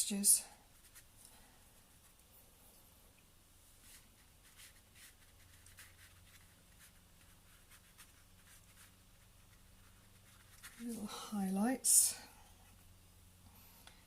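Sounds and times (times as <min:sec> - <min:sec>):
paintbrush scratching over canvas: 0:03.8 - 0:11.6.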